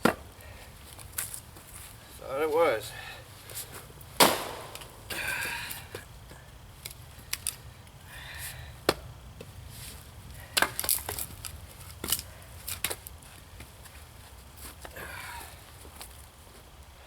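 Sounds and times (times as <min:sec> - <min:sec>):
axe chopping into log: 0:00.0 - 0:00.2, 0:04.2 - 0:05.2.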